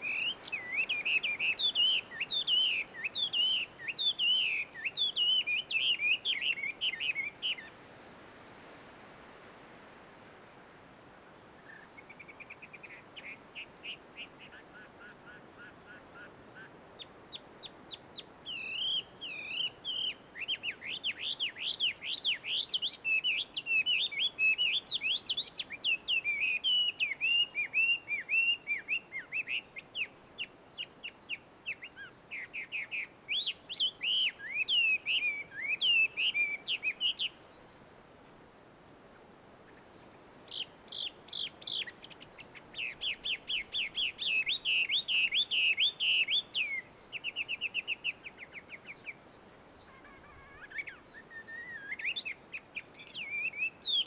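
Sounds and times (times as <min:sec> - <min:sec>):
bird singing whistled phrases: 0:00.0 - 0:07.7, 0:18.5 - 0:30.5, 0:31.3 - 0:37.4, 0:42.7 - 0:49.2, 0:49.8 - 0:54.0.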